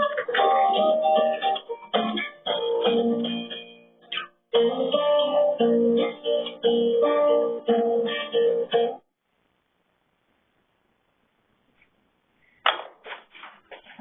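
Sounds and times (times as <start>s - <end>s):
plucked string music: 0.0s - 9.0s.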